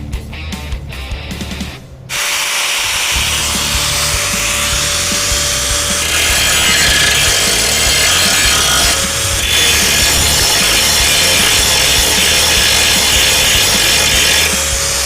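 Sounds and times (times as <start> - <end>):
abrasive scraping on hard surface: 3.2 - 14.8.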